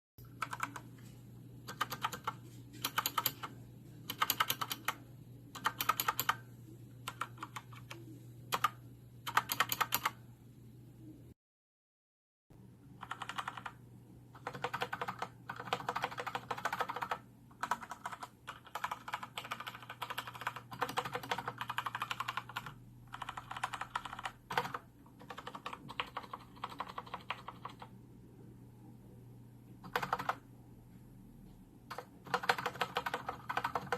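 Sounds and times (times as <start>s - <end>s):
keyboard keys being pressed: 0.2s - 0.9s, 1.7s - 3.5s, 4.1s - 5.0s, 5.6s - 6.4s, 7.1s - 10.2s, 13.0s - 13.8s, 14.4s - 27.9s, 29.8s - 30.4s, 31.9s - 33.9s.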